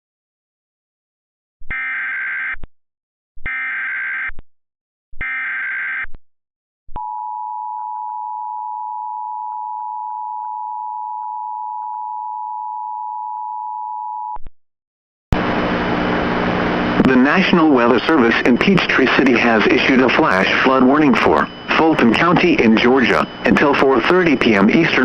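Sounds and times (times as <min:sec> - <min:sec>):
two-pitch warbling data bursts: 0:17.0 - 0:24.9
steady two-tone attention signal: 0:17.0 - 0:25.0.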